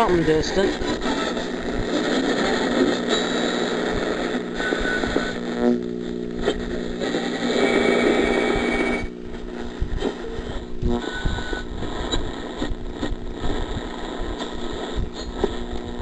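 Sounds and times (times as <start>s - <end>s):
faint distant radio stations: 0.0s - 5.6s
radio static and interference: 0.0s - 16.0s
steady hum: 0.0s - 16.0s
radio whistles: 4.5s - 5.5s, 7.5s - 9.1s.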